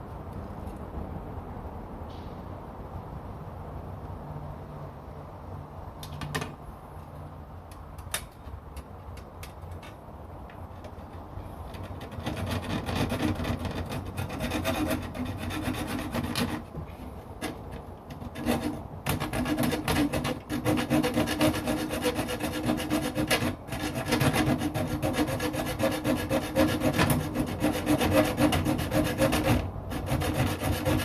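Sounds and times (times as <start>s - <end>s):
hacksaw cutting metal: 10.8s - 31.0s.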